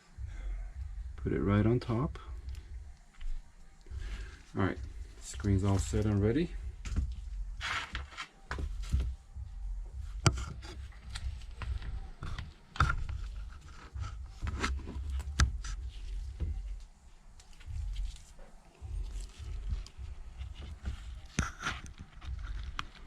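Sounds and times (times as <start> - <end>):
low steady hum: 0.0 - 23.0.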